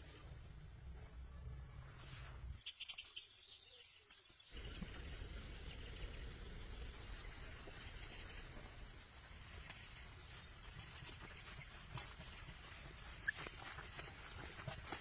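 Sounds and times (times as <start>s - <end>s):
birds chirping: 2.5s - 14.9s
low outdoor rumble: 4.5s - 15.0s.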